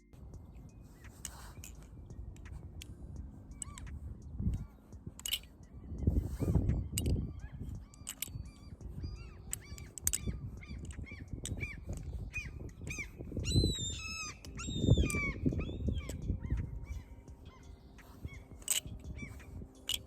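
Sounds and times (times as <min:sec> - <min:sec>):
short high chirping calls: 0:00.6 - 0:20.0
butterfly knife clicking: 0:01.0 - 0:05.6, 0:06.5 - 0:20.0.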